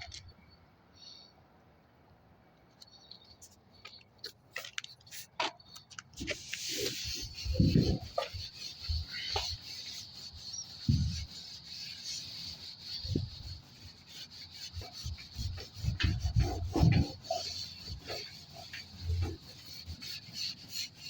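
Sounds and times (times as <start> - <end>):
rag scrubbing a door: 6.2 - 21.0.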